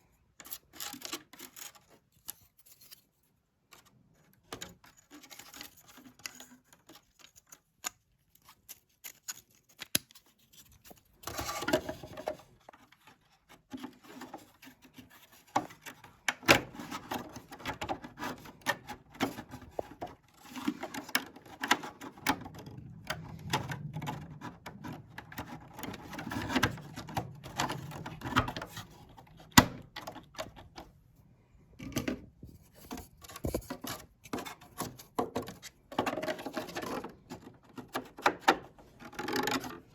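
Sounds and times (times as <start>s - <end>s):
hand tools clicking and scraping: 4.6s - 30.9s.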